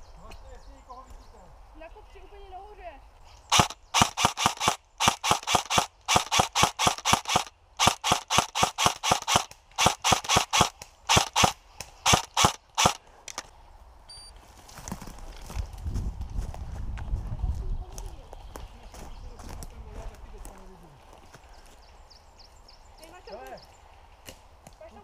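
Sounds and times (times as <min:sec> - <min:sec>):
airsoft gun shots: 0:03.5 - 0:13.0.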